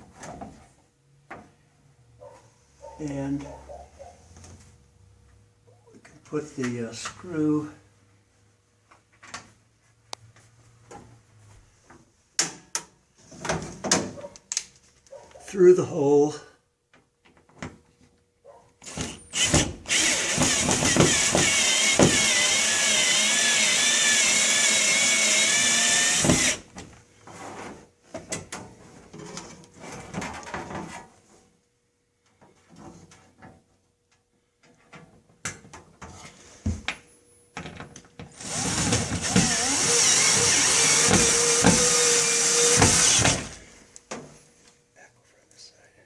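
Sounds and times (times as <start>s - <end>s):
power drill driving screw: 18.8s - 26.6s, 38.4s - 43.6s.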